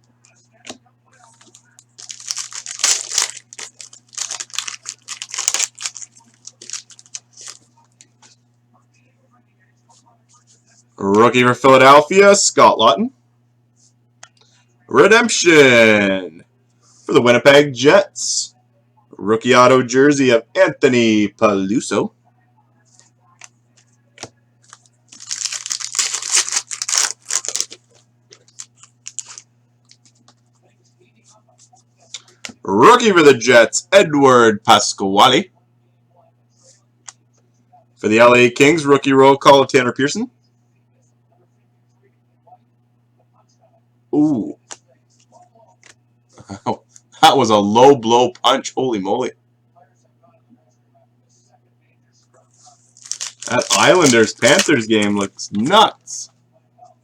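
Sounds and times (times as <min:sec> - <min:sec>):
cards being handled: 0:01.2 - 0:08.3, 0:22.9 - 0:30.4, 0:52.6 - 0:55.4
foil wrapper tearing and crinkling: 0:01.3 - 0:07.6, 0:24.7 - 0:30.1, 0:52.9 - 0:55.4.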